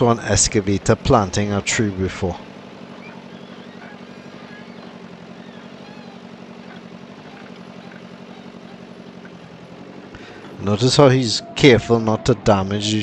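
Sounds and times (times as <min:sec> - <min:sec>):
diesel engine running: 0:00.0 - 0:13.0.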